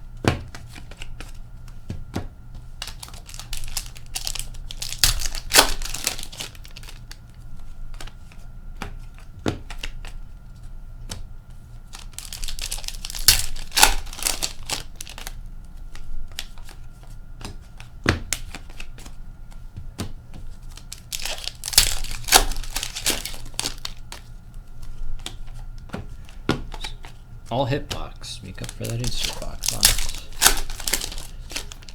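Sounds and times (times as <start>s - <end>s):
packaging tearing and crinkling: 2.8s - 7.2s, 11.9s - 15.4s, 20.7s - 24.3s, 26.7s - 31.9s.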